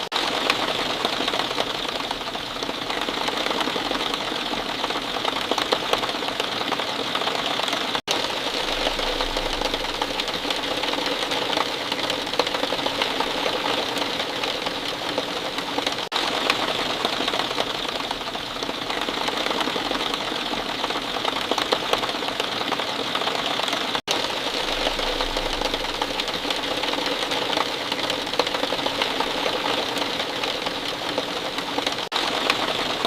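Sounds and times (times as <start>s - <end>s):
steady rainfall: 0.0s - 33.0s.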